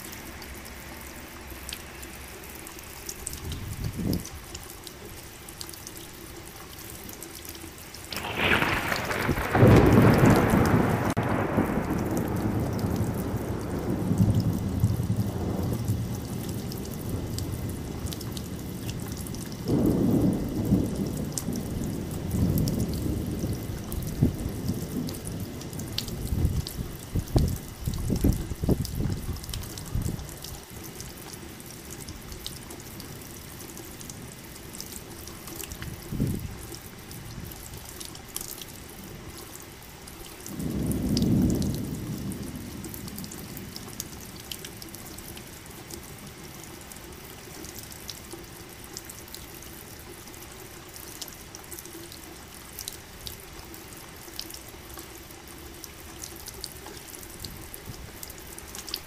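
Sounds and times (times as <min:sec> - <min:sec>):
steady rain: 0:00.0 - 0:59.0
thunder crack and rumble: 0:08.1 - 0:30.5, 0:35.7 - 0:36.6, 0:40.4 - 0:45.2.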